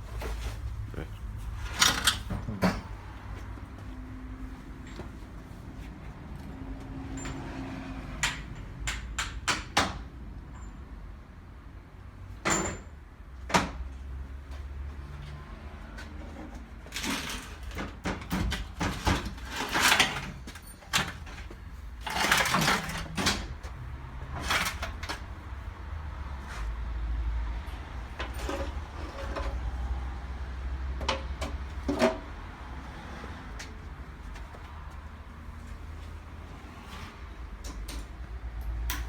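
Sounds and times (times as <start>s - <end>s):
metal parts knocking and clinking: 16.9s - 23.6s.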